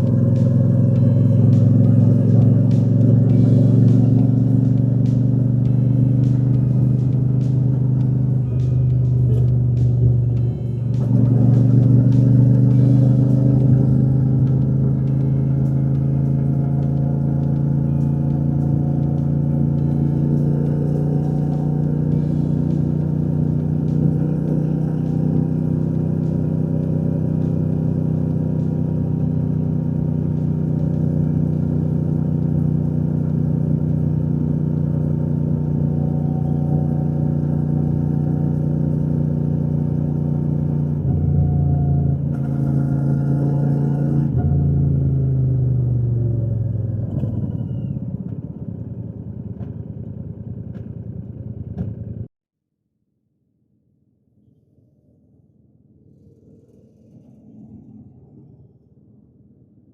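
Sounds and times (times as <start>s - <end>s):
motorcycle engine and exhaust: 0.0s - 52.3s.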